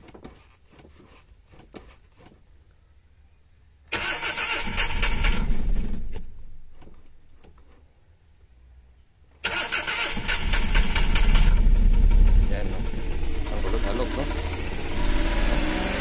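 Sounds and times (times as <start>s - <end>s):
engine cranking: 3.9s - 6.4s, 9.4s - 15.7s
engine running roughly: 10.2s - 16.0s.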